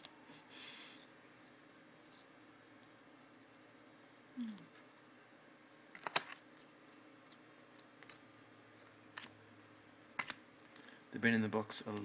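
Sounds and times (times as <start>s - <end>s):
trading cards clicking and snapping: 5.9s - 6.7s, 10.2s - 10.9s.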